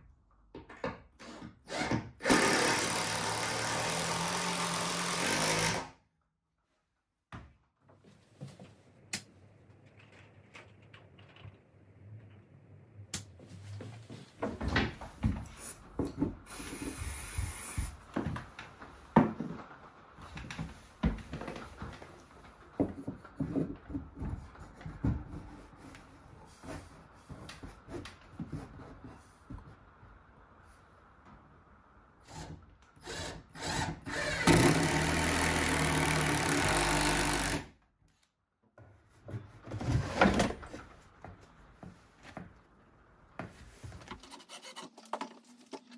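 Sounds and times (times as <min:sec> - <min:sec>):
power tool motor running: 0:01.7 - 0:05.9, 0:32.3 - 0:37.7.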